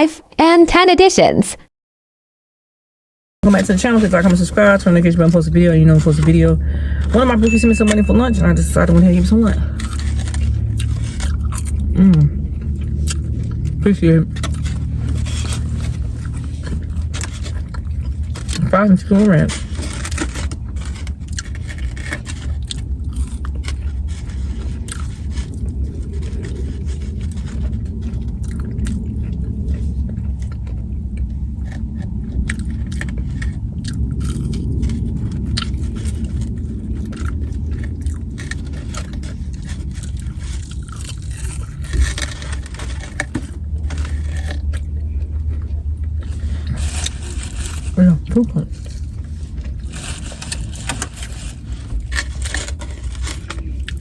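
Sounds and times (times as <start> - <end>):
steady low hum: 3.4 - 54.0
food packaging rustling: 3.5 - 11.9, 12.6 - 30.7, 31.6 - 54.0
chewing and biting: 3.5 - 54.0.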